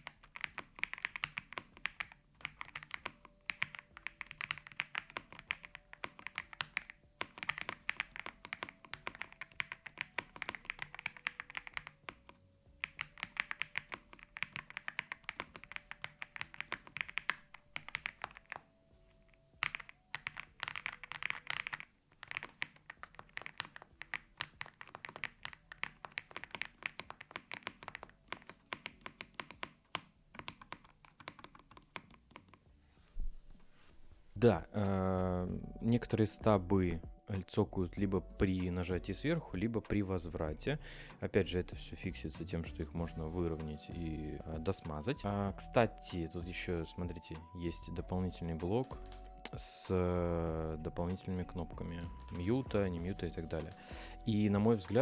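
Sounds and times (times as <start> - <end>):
keys ticking: 0.0 - 32.8, 48.8 - 55.0
mechanical keyboard key clacks: 19.6 - 32.6.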